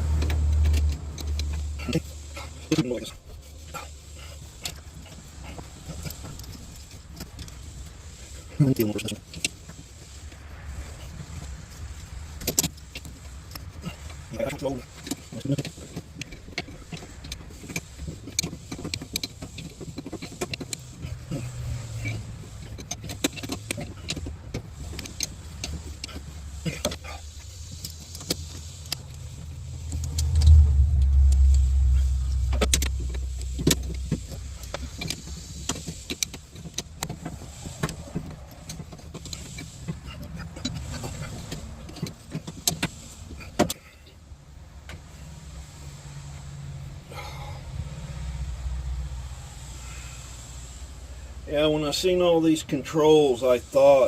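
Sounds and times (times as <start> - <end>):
control clicks and knocks: 15.0 - 27.1, 27.7 - 43.8
excavator diesel engine running: 28.9 - 35.6.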